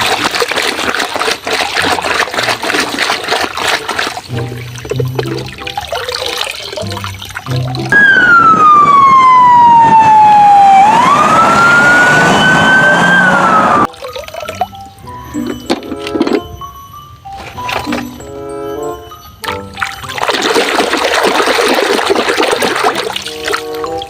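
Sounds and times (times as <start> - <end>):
siren-like whistling tone: 7.9 - 13.9.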